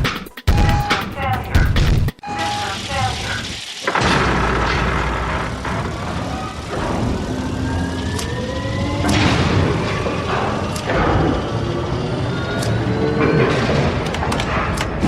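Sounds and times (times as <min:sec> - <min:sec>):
slow rising whines: 0:05.5 - 0:13.6.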